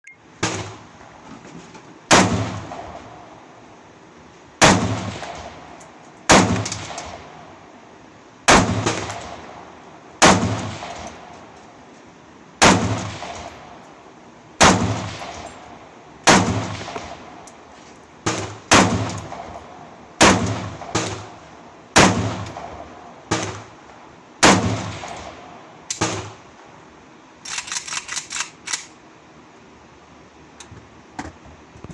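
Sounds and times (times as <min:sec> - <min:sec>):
rifle shots echoing: 0:02.1 - 0:03.3, 0:04.6 - 0:07.5, 0:08.5 - 0:11.3, 0:12.6 - 0:13.8, 0:14.6 - 0:15.6, 0:16.2 - 0:17.4, 0:18.3 - 0:23.8, 0:24.4 - 0:26.4.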